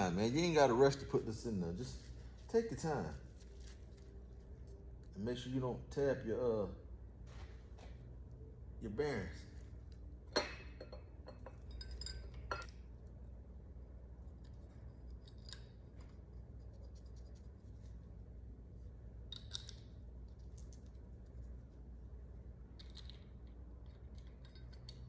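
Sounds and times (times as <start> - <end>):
low steady hum: 0.0 - 25.0
metal clinks: 10.3 - 12.8, 14.7 - 17.4, 22.8 - 25.0.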